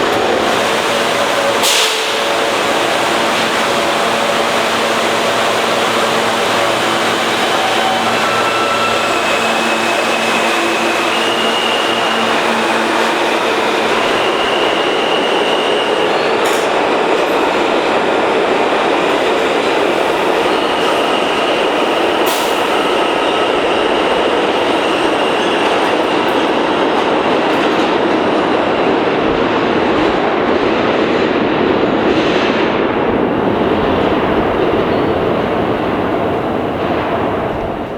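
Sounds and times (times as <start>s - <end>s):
subway train rumbling on rails: 0.0s - 37.9s
high-pitched wheel squeal: 0.1s - 16.8s.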